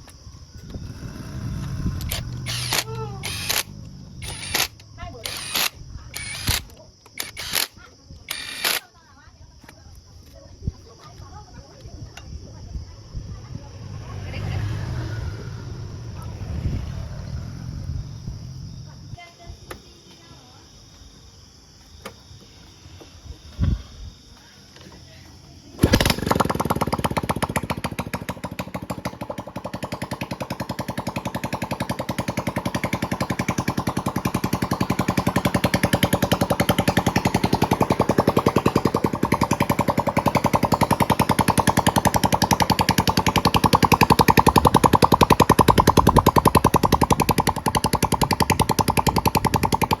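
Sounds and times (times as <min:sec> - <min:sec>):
motorcycle engine running: 0:00.0 - 0:06.6, 0:12.2 - 0:19.3, 0:25.8 - 0:50.0.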